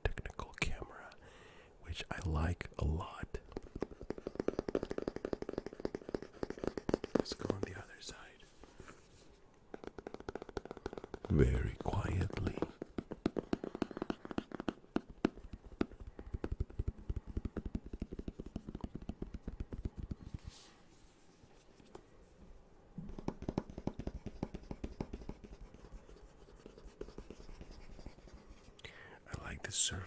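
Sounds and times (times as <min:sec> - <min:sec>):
fingers tapping on cardboard: 0:03.5 - 0:08.0, 0:09.7 - 0:20.4, 0:23.0 - 0:28.8.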